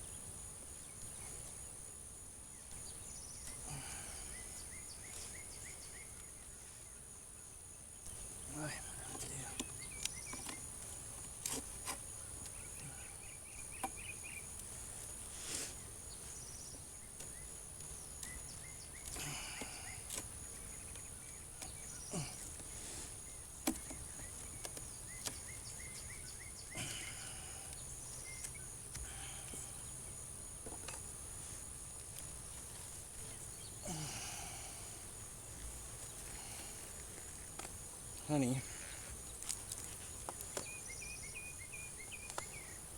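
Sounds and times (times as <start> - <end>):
insects buzzing: 0.0 - 42.9
hive handling rustles: 8.1 - 12.8, 27.8 - 33.8, 35.0 - 40.9
fast pulsing insect chirp: 12.0 - 42.9.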